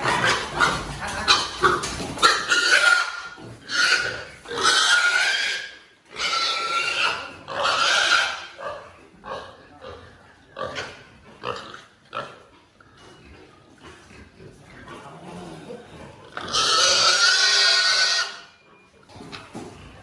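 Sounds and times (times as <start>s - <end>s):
pigs squealing loudly: 0.0s - 9.6s, 13.9s - 18.6s.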